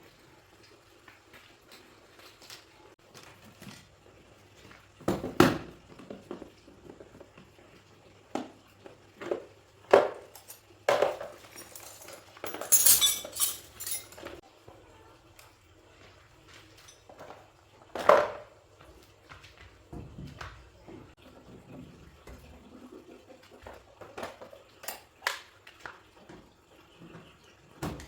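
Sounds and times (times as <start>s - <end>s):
jangling rattle: 11.2s - 14.3s
metallic clinks of tools: 11.4s - 14.4s.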